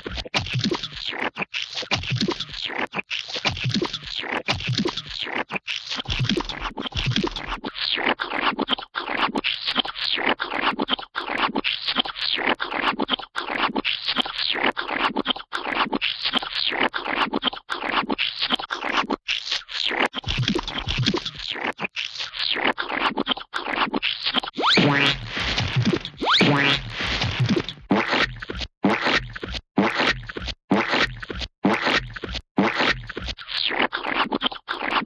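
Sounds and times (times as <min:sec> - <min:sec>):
gooey splat sound effects: 0:00.0 - 0:07.6, 0:20.1 - 0:21.7, 0:24.4 - 0:33.4.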